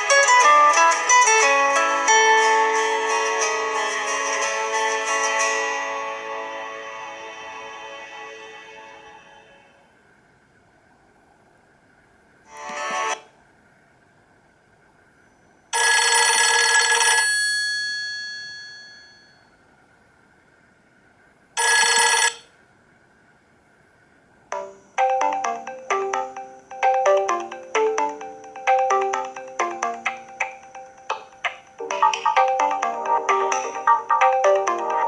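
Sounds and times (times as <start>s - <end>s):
long phone chime: 15.8s - 19.5s, 24.5s - 35.0s
quick melodic ringtone: 24.5s - 35.0s.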